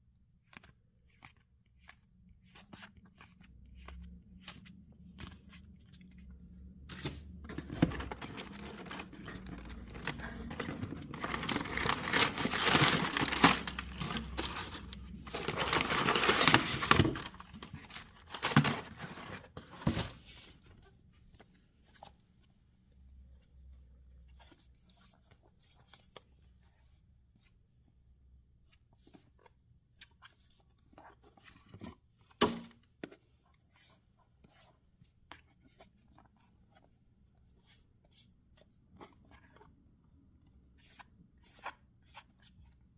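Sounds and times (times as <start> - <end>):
packaging torn and crinkled: 11.0 - 18.6.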